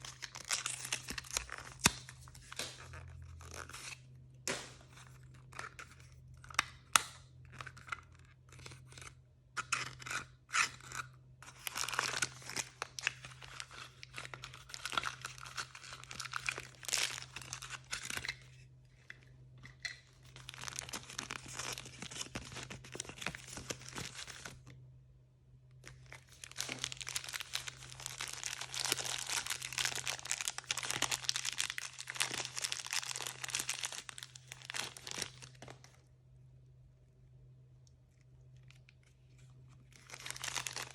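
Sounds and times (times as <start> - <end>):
packaging crinkling and tearing: 0.0 - 5.9, 9.8 - 18.6, 19.6 - 24.7, 25.8 - 36.0, 39.8 - 40.9
faint low hum: 0.0 - 40.9.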